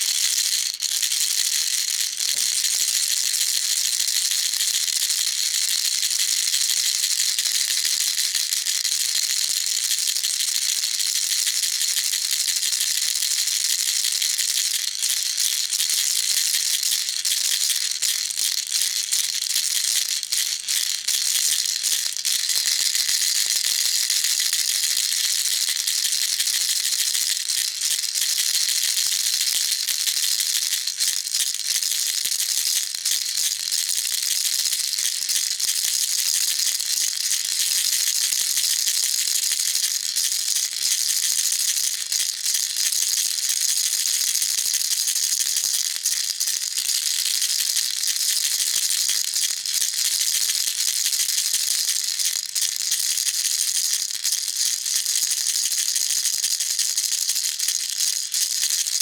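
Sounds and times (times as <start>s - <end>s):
baby rattle shaking: 17.1s - 58.7s.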